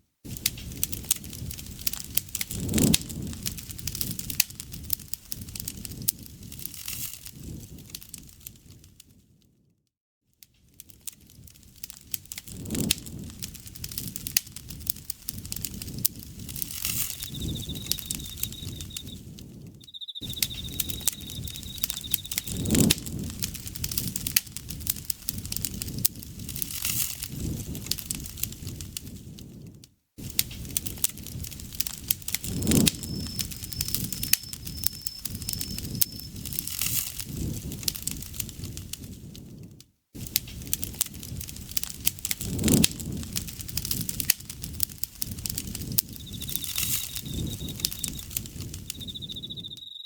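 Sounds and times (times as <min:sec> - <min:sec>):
campfire crackling and popping: 0:00.3 - 0:09.0, 0:10.6 - 0:50.0
insect trilling: 0:16.8 - 0:19.2, 0:19.8 - 0:22.9, 0:32.4 - 0:36.4, 0:45.9 - 0:50.0.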